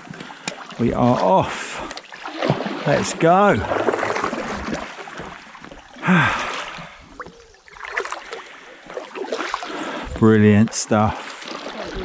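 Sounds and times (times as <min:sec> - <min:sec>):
paddle strokes splashing in water: 0:00.0 - 0:12.0
loud splash: 0:01.5 - 0:05.0, 0:07.8 - 0:10.1.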